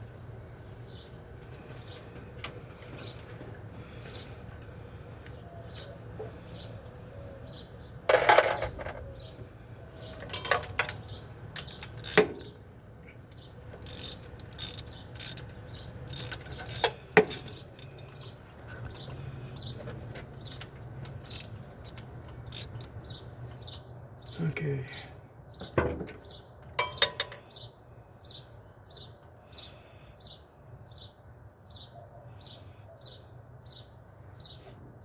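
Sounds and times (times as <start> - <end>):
metallic clicks of hand tools: 10.2 - 12.4, 13.3 - 18.1, 20.5 - 23.0.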